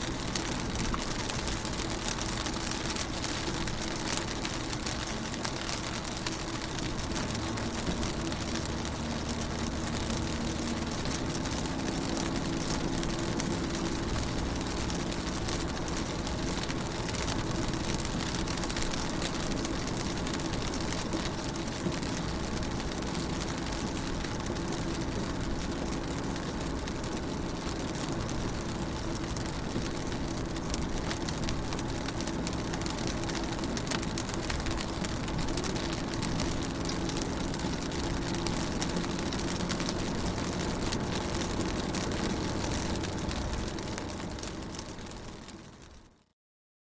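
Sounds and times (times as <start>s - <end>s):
rain on car windows: 0.0s - 46.4s.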